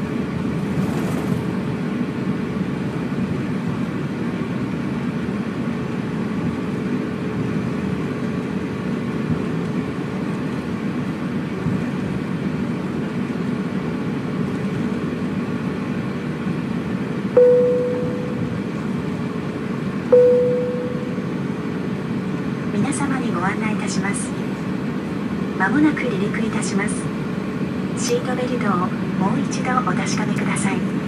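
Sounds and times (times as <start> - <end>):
airplane cabin rumble: 0.0 - 31.0
cabin chime: 20.2 - 21.2.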